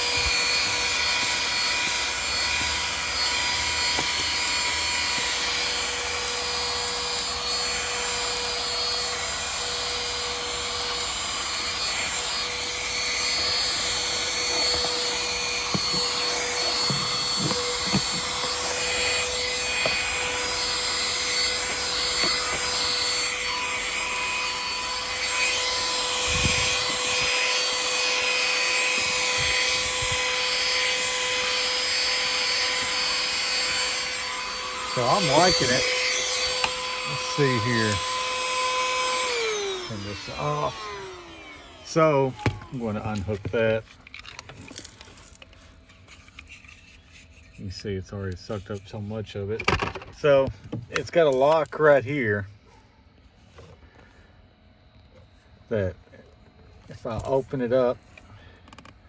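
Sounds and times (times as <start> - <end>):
handheld vacuum running: 0.0 - 52.4, 55.0 - 59.0.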